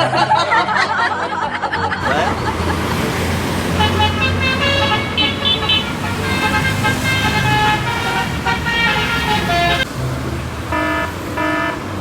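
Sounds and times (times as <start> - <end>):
multi-note bus horn tune: 2.0 - 9.9, 10.6 - 12.0
low engine hum: 2.0 - 12.0.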